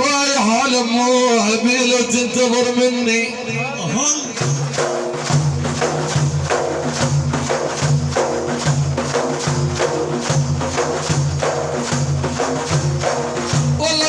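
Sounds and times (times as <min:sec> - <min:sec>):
frame drums with jingles: 0:03.5 - 0:14.0.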